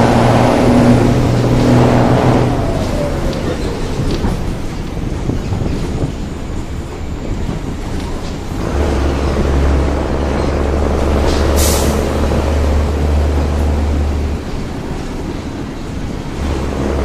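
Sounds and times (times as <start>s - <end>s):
bus diesel engine droning: 0.0s - 17.0s
air hiss: 11.3s - 12.4s.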